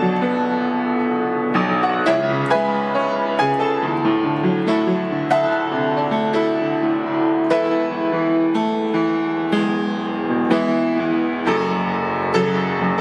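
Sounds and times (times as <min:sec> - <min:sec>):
solo piano melody: 0:00.0 - 0:13.0.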